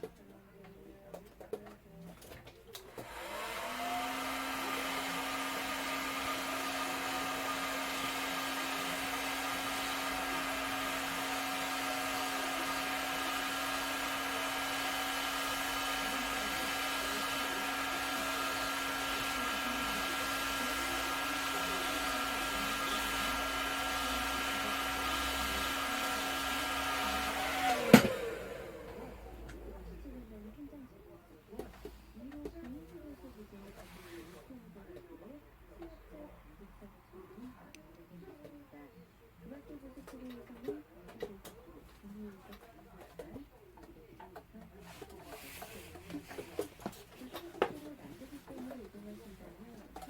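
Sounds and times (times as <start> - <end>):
electric blower motor humming: 2.9 - 30.4.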